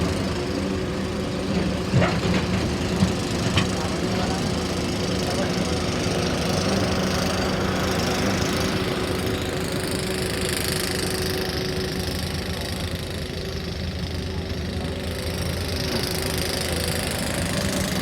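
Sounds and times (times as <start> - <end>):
excavator diesel engine running: 0.0 - 18.0.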